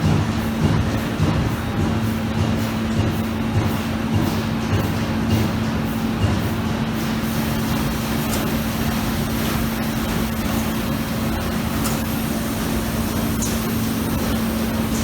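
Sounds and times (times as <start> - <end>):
laser cutting machine humming: 6.9 - 15.0.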